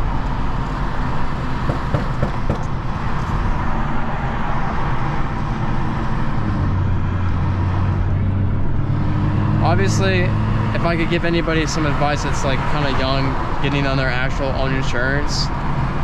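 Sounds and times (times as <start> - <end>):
low engine drone: 0.0 - 16.0
road and tyre noise: 0.0 - 16.0.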